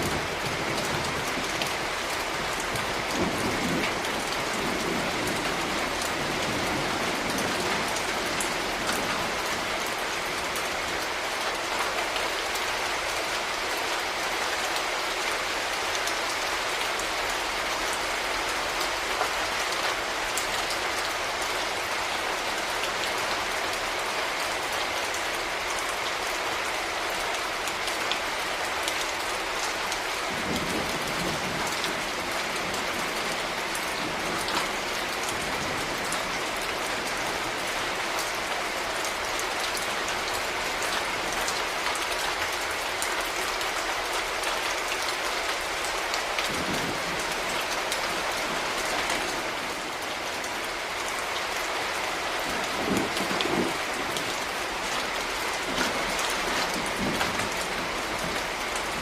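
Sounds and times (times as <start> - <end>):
low knocks of heavy raindrops: 0.0 - 12.6, 51.5 - 59.0
rain pattering on surfaces: 0.0 - 59.0.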